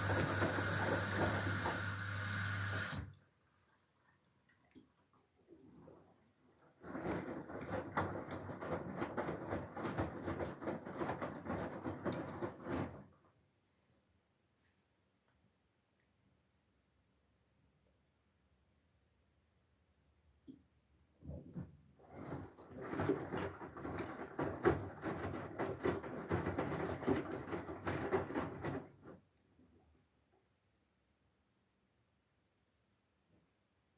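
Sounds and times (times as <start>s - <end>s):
washing machine drum turning: 0.0s - 3.0s
water sloshing in washing machine: 0.0s - 13.2s, 21.3s - 29.2s.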